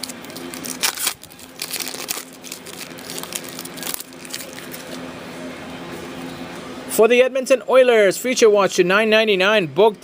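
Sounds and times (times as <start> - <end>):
card packs crinkling and rustling: 0.0 - 5.0.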